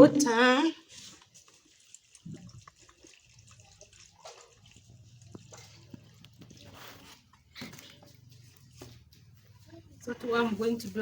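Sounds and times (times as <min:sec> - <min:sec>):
water pouring into pot: 0:00.2 - 0:07.5.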